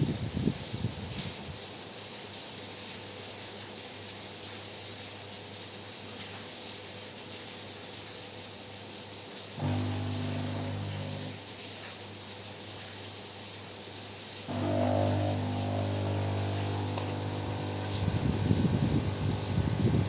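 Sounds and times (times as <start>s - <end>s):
coffee machine rumble: 9.6s - 11.4s, 14.5s - 20.0s
steam hiss frothing milk: 9.6s - 11.4s, 14.5s - 20.0s
coffee machine pump buzzing: 9.6s - 11.5s, 14.5s - 20.0s.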